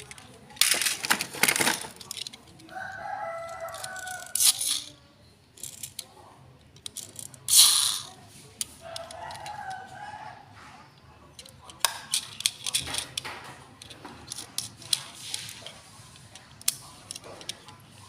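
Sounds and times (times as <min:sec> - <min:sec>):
toy packaging rustling: 0:00.0 - 0:04.9, 0:06.8 - 0:08.2.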